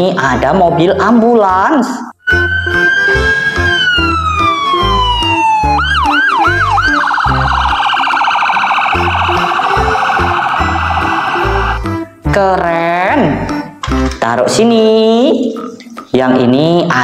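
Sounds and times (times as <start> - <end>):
background music with steady beat: 0.0 - 17.0
electronic siren wailing and yelping: 2.2 - 12.0.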